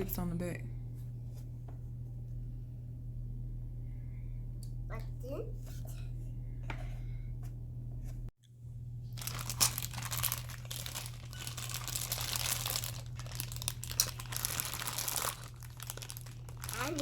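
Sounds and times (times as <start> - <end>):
plastic crinkling and rustling: 9.1 - 17.0.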